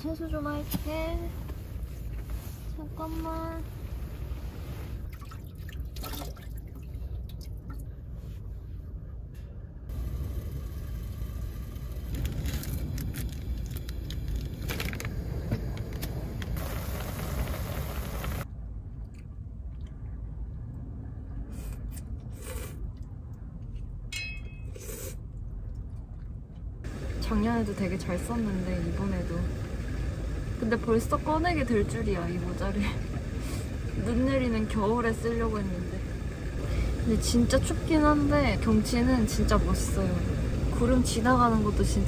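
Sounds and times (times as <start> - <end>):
water pouring and splashing: 4.9 - 7.9
wind rumble on microphone: 11.7 - 21.5.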